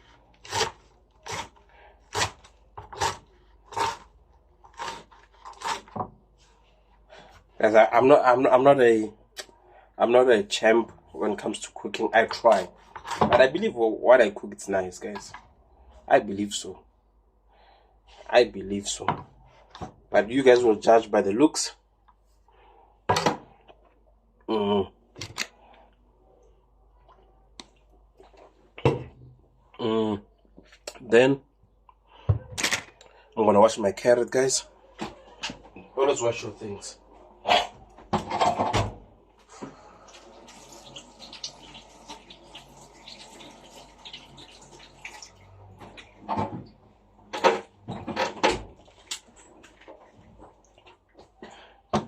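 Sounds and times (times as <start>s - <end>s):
tap water running into sink: 40.1s - 45.4s.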